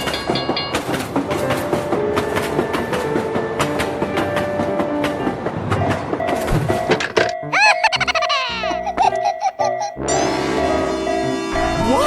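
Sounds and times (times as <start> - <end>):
train wheels clattering over rails: 0.0 - 7.2.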